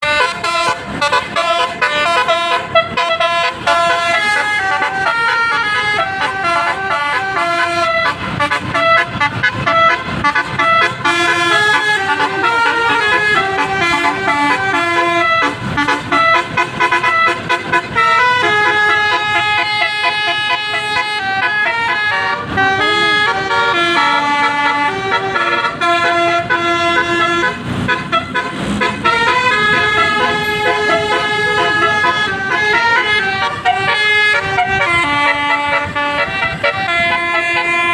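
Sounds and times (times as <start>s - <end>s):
multi-tone bus horn tune: 0.0s - 37.9s.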